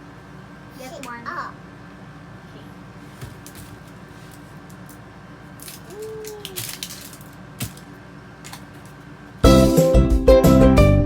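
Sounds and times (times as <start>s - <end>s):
wrapping and capsule rustling: 3.1s - 9.4s.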